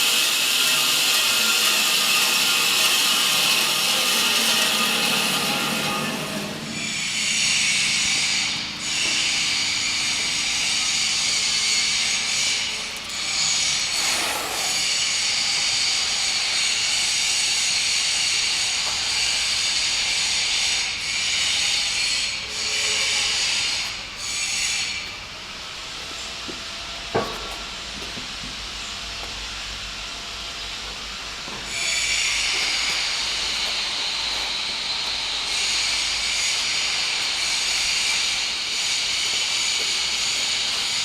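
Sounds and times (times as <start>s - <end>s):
band saw blade cutting wood: 0.0s - 15.8s.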